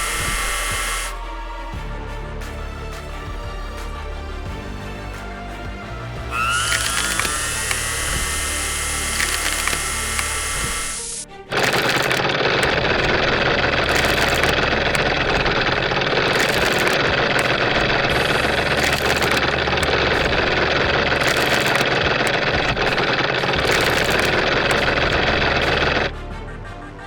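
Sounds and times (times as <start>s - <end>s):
machine engine running: 0.0s - 1.2s, 6.3s - 26.1s.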